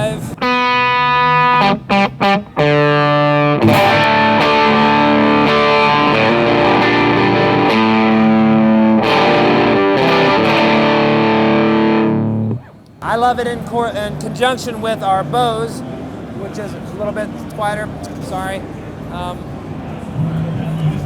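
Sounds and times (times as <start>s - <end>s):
distorted electric guitar chords: 0.0s - 12.8s.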